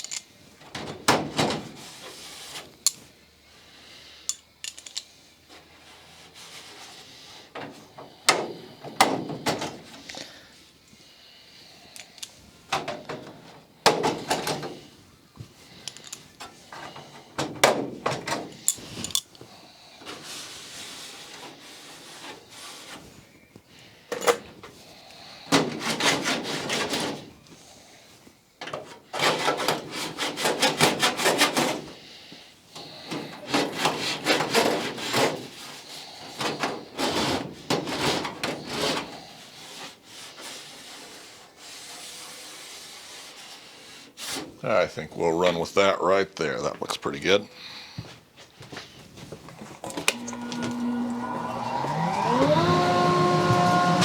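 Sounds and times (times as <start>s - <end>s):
scraping and rubbing on metal sheet: 20.1s - 23.1s, 25.6s - 27.3s, 29.2s - 31.9s, 33.2s - 44.6s.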